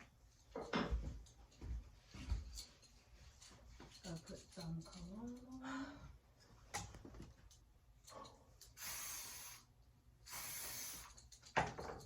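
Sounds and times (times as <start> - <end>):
spray bottle hissing spritzes: 8.8 - 9.6, 10.3 - 11.2.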